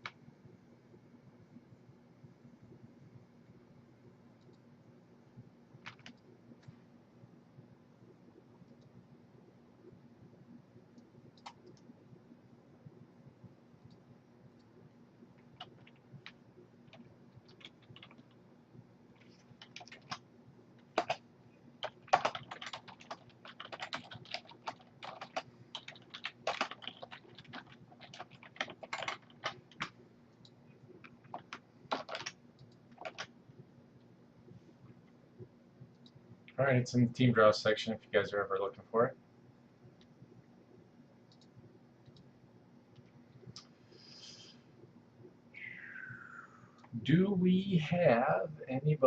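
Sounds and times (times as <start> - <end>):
faint steady hum: 0.0 - 49.0
typing on computer keyboard: 5.8 - 6.2, 11.4 - 11.9, 15.4 - 18.4, 19.2 - 20.2, 20.8 - 21.2, 21.8 - 30.0, 31.0 - 33.3.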